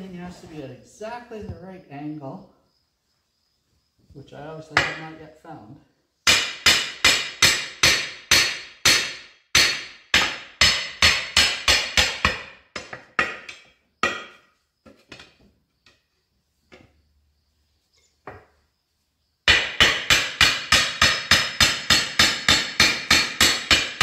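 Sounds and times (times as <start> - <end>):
hammer striking steel wheel: 19.5 - 24.0.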